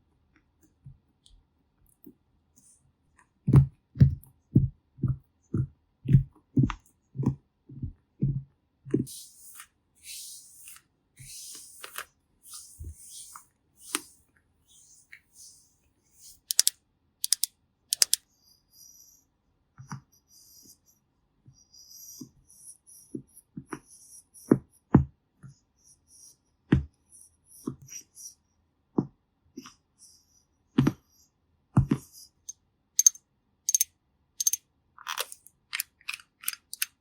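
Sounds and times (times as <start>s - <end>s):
brush strokes swishing: 9.1s - 16.4s
sharp clicks: 16.4s - 18.2s, 33.0s - 37.0s.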